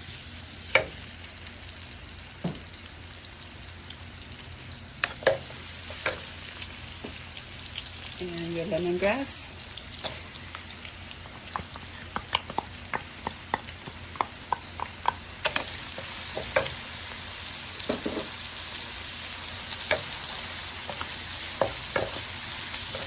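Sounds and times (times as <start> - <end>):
garlic sizzling in hot oil: 0.0 - 23.0
utensil scraping a pan: 17.9 - 18.4.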